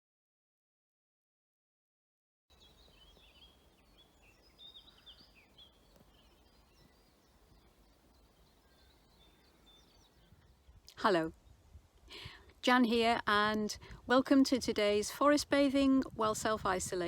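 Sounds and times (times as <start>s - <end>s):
distant birds twittering: 2.5s - 12.6s.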